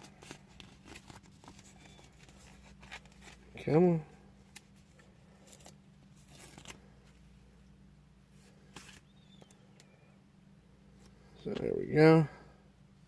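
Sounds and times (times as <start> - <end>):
sticker peeling rustles: 0.0 - 3.6, 4.4 - 7.2
low room hum: 0.0 - 13.0.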